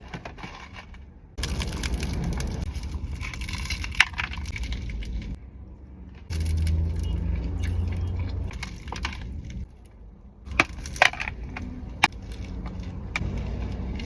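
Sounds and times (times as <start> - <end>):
chocolate crunching being chewed: 1.4 - 5.4
chocolate snapping: 1.4 - 5.4.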